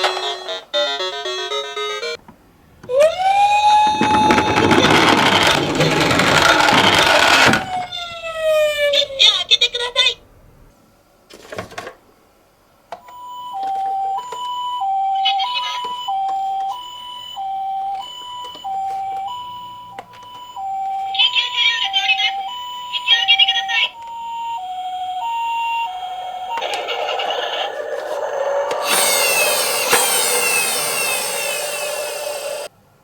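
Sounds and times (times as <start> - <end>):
toy two-tone siren: 2.8 - 9.3, 13.1 - 32.7
loud scraping rumble: 3.5 - 7.8, 26.6 - 32.7.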